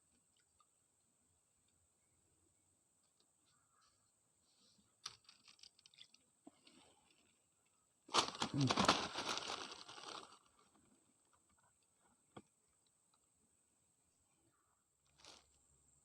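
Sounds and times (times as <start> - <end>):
rustling and crackling handling noise: 5.0 - 7.4, 8.1 - 11.9, 15.1 - 15.6.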